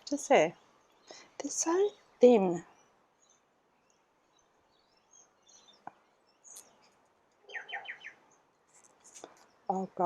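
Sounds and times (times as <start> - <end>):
faint bird chirps: 0.5 - 8.5.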